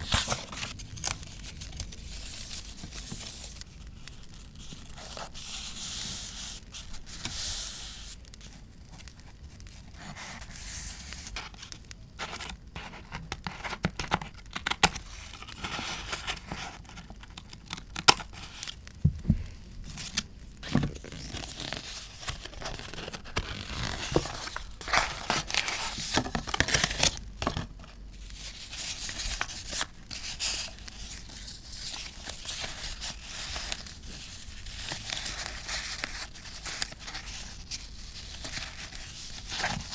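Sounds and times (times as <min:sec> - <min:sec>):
paper tearing and crinkling: 0:00.0 - 0:08.1, 0:19.9 - 0:39.9.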